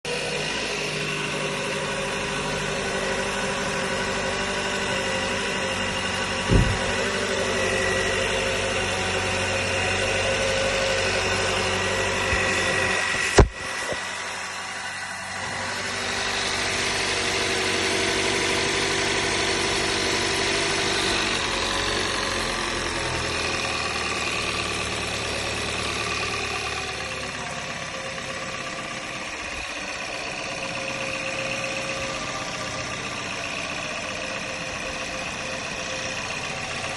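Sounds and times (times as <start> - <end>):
car engine running: 0.0 - 36.9
engine knocks: 5.7 - 36.9.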